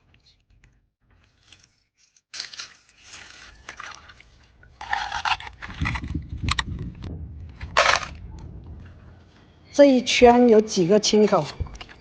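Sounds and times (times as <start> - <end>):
shells crunching and squelching: 2.3 - 6.7, 7.7 - 8.2.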